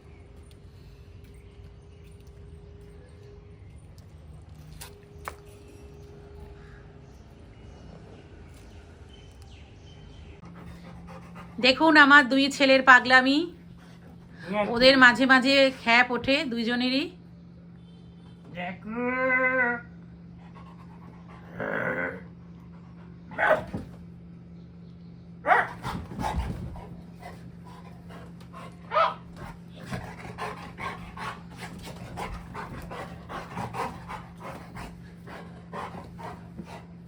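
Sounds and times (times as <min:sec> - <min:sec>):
dogs panting: 0:10.3 - 0:16.2, 0:20.2 - 0:21.6, 0:25.5 - 0:37.0
dogs growling: 0:20.3 - 0:23.9, 0:25.5 - 0:37.0
dog barking: 0:23.3 - 0:23.9, 0:25.4 - 0:26.0, 0:28.9 - 0:29.3
dogs scuffling: 0:25.5 - 0:37.0.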